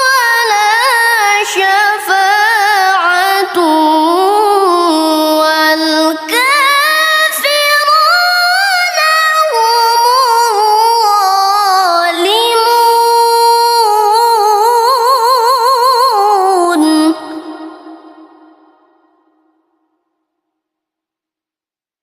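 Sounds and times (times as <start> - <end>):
person reciting melodically: 0.0 - 18.7.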